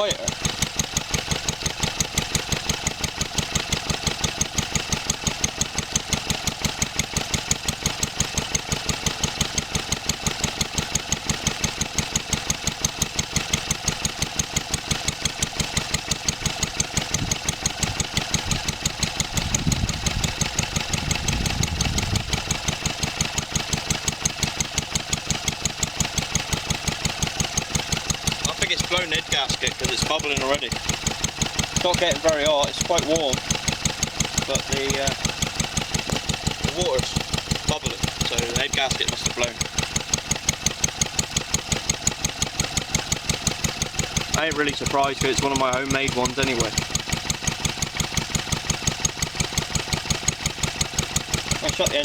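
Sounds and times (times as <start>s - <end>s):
stationary engine running: 0.0s - 52.0s.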